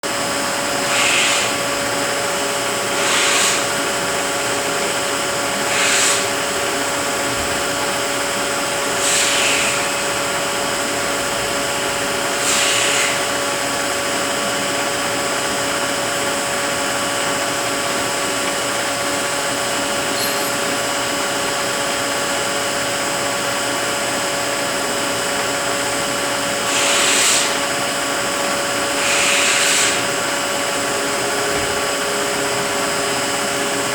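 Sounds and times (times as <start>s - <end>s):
transmission gear whine: 0.1s - 33.9s
short hissing bursts: 0.8s - 1.6s, 3.0s - 3.7s, 5.6s - 6.4s, 9.0s - 10.1s, 12.3s - 13.4s, 26.6s - 27.7s, 29.0s - 30.2s.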